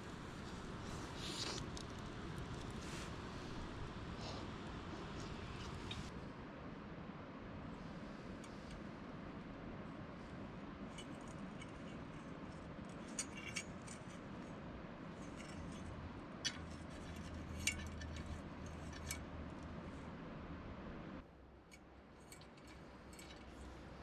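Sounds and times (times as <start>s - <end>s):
small sharp clinks: 10.9s - 14.5s.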